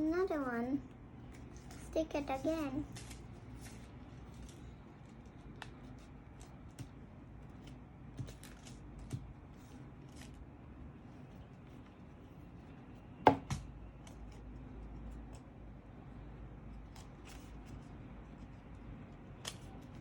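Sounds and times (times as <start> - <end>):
paper rustling: 1.3 - 10.4.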